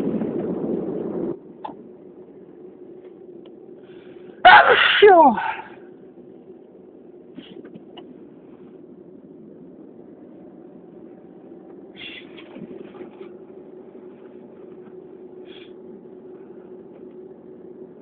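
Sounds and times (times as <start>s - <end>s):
steady background hum: 0.0s - 18.0s.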